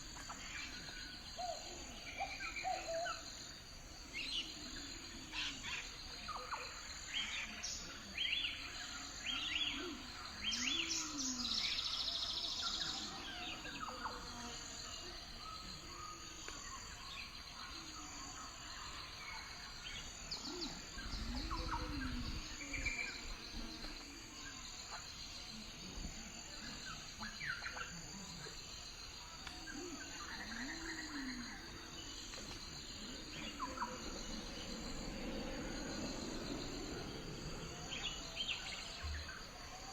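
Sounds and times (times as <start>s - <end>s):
high-pitched insect chorus: 0.0s - 39.9s
low rising and falling call: 33.0s - 39.0s.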